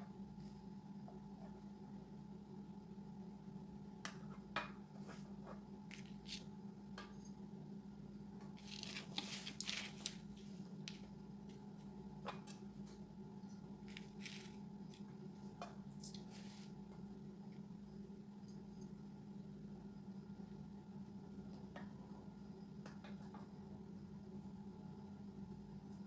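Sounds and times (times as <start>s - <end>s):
hands clicking and rustling: 13.8s - 15.1s.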